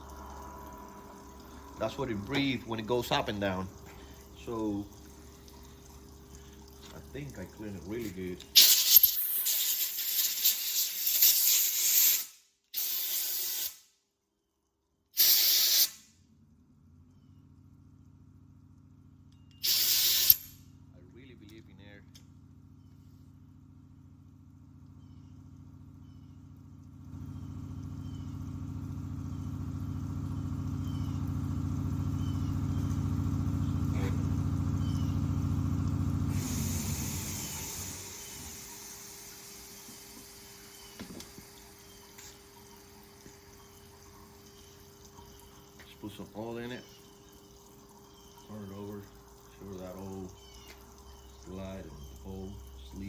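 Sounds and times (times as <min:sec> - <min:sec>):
air compressor humming: 0:00.0 - 0:13.8, 0:15.2 - 0:16.0, 0:19.6 - 0:22.0, 0:27.0 - 0:53.0
compressed air blow gun hissing: 0:08.6 - 0:13.8, 0:15.2 - 0:16.0, 0:19.6 - 0:20.5, 0:36.3 - 0:40.3.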